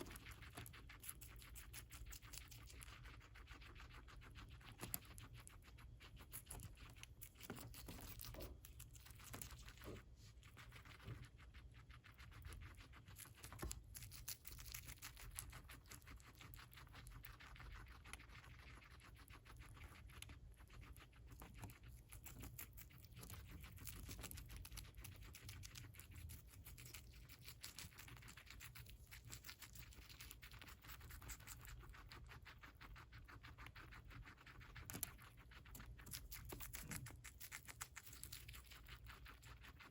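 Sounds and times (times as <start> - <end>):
guinea pig chewing lettuce: 0.0 - 39.9.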